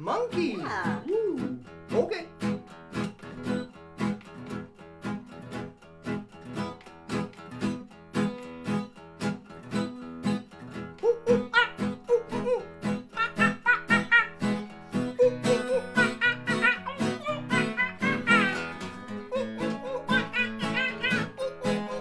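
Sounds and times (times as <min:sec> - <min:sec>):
acoustic guitar strumming: 0:00.0 - 0:22.0
man hooting like a monkey: 0:11.0 - 0:22.0.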